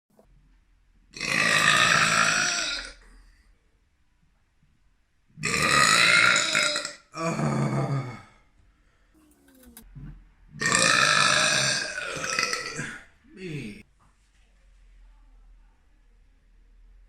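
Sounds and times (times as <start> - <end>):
long drawn-out belches: 1.2 - 3.1, 5.4 - 8.3, 10.6 - 13.8.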